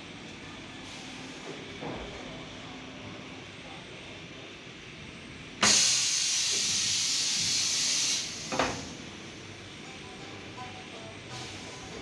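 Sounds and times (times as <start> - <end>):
machine hissing: 5.6 - 9.4, 11.3 - 12.0.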